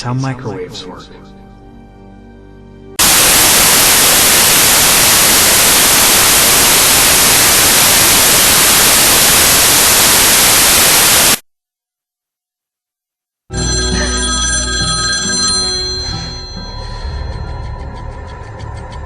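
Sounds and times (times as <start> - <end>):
loud static hiss: 3.0 - 11.4.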